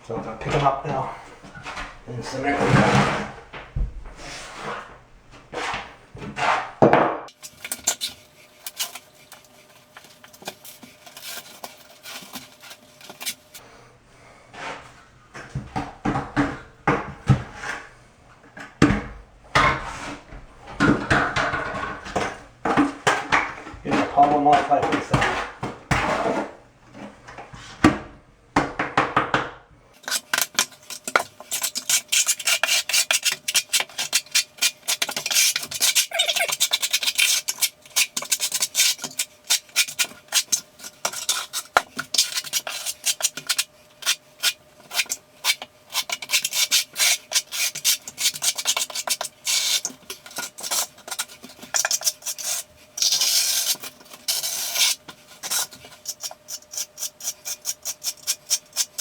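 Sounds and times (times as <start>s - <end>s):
trowel scraping mortar: 1.7s - 3.6s, 4.2s - 13.6s, 30.0s - 59.0s.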